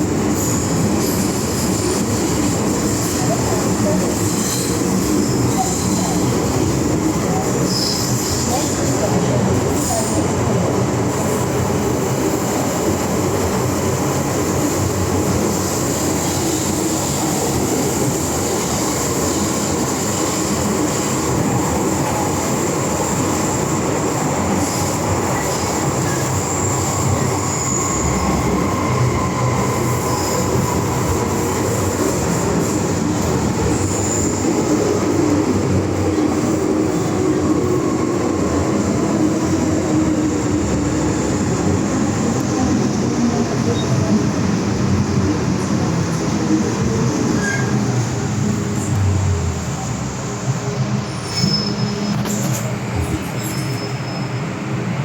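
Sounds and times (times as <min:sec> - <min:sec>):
rumble of wheels on rail: 0:00.0 - 0:55.0
wheel squeal: 0:47.4 - 0:47.8, 0:51.1 - 0:54.4.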